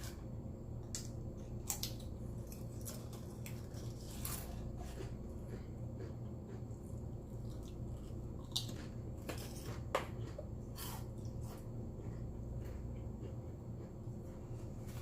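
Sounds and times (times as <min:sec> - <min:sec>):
steady low hum: 0:00.0 - 0:15.0
potato chips crunching: 0:00.9 - 0:11.6.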